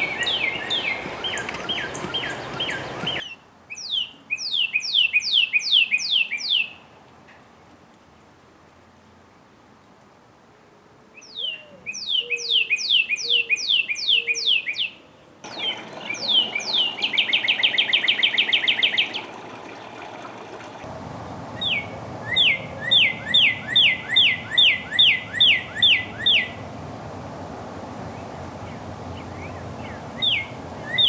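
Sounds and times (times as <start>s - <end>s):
bird trill: 0.0s - 6.7s, 15.5s - 31.0s
bird whistling song: 0.0s - 6.8s, 11.2s - 19.7s, 20.9s - 31.0s.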